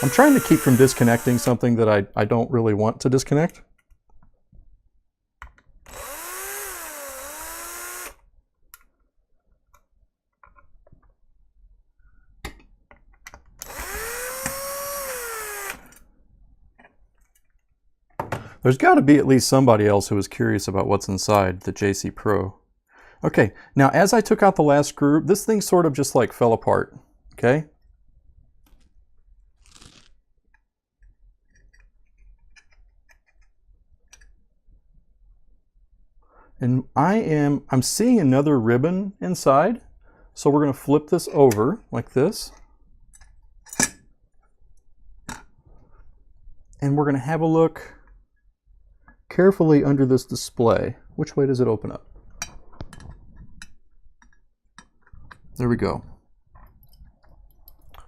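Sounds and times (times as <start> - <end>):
electric screwdriver running: 0.0 - 1.6, 5.9 - 8.2, 13.6 - 15.9.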